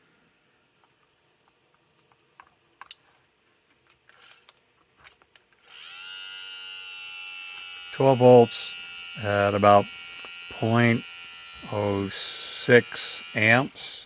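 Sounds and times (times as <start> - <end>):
small motor high whine: 5.6 - 14.0.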